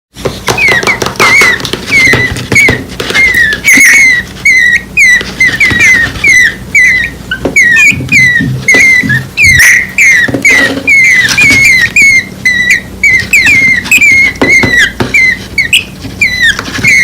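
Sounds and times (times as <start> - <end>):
nestling birds chirping: 0.3 - 17.0.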